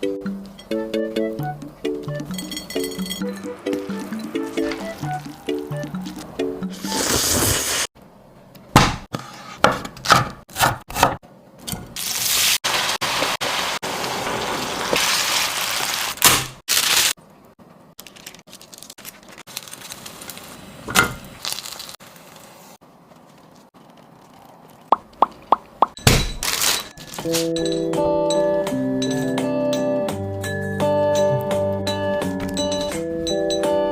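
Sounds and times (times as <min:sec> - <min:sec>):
sharp knocks and cracks: 0:08.8 - 0:11.2.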